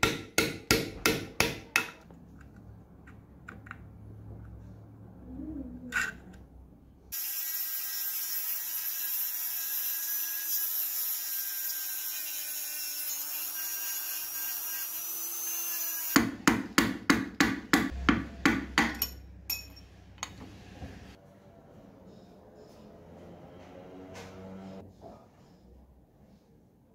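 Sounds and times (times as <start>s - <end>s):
hammer striking metal: 0.0s - 2.0s, 16.2s - 19.9s
small power tool on metal: 7.1s - 16.2s.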